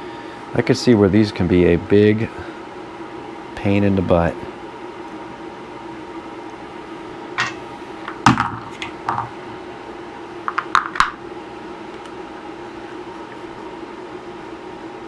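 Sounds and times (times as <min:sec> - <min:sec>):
metal parts clinking and knocking: 0:07.4 - 0:09.3.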